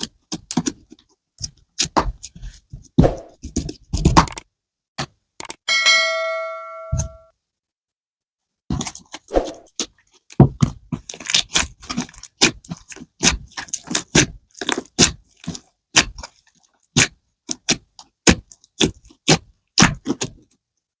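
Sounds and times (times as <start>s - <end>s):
slime squishing with pops: 8.7s - 20.6s.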